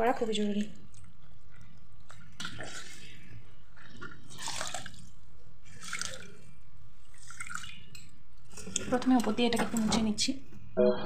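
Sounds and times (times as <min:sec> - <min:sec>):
water dripping from wet cloth: 0:03.7 - 0:08.5.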